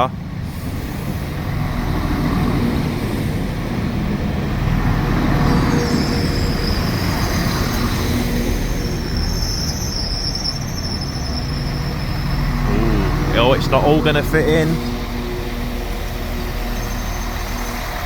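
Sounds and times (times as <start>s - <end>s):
train wheels and engines rumbling: 0.0s - 18.0s
high brake squeal: 4.9s - 18.0s.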